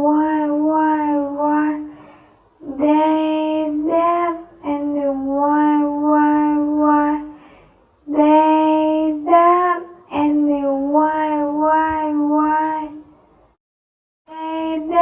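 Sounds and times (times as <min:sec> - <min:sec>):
high voice singing held syllables: 0:00.0 - 0:13.2, 0:14.3 - 0:15.0.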